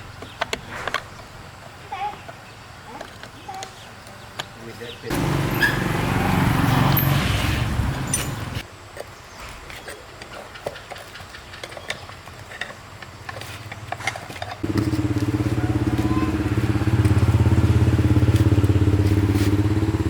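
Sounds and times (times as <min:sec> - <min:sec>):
small engine running: 0:05.1 - 0:08.6, 0:14.0 - 0:20.0.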